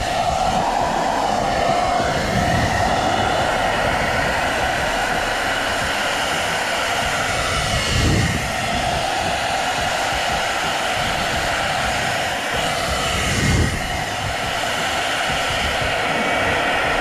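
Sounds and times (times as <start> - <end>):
low rumble: 0.0 - 10.0
hair dryer running: 0.0 - 17.0.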